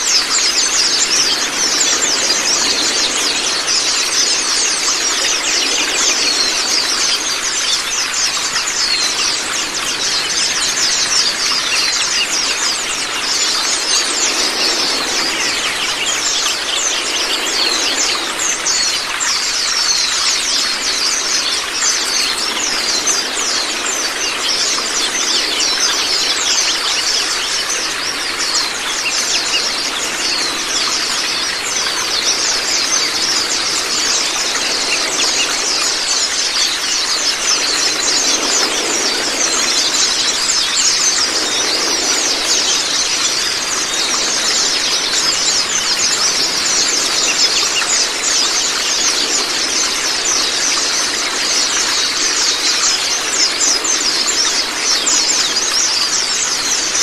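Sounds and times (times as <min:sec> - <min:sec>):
birds singing and chirping: 0:00.0 - 0:57.0
running water rushing: 0:00.0 - 0:57.0.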